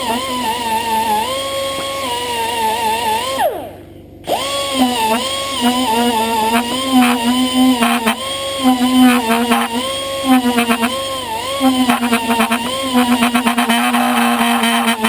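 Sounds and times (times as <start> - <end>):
air tool whining: 0.0 - 15.0
wire brush rasping on metal: 4.8 - 15.0.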